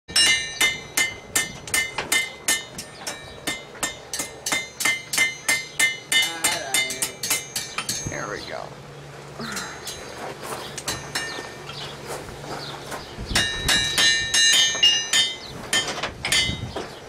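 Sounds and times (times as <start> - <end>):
hammer striking metal on anvil: 0.1 - 8.4, 10.8 - 11.7, 13.4 - 16.6.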